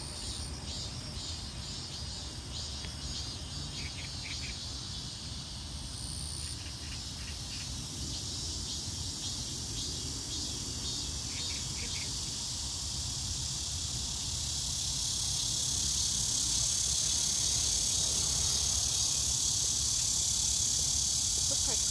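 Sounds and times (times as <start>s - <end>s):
insects chirring: 0.0s - 21.9s.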